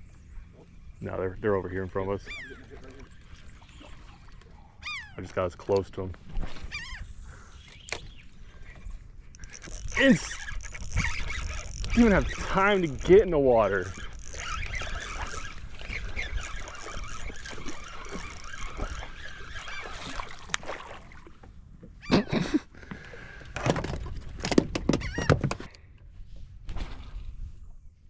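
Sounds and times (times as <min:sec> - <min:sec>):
seagulls calling: 0:02.0 - 0:05.3, 0:06.6 - 0:08.8.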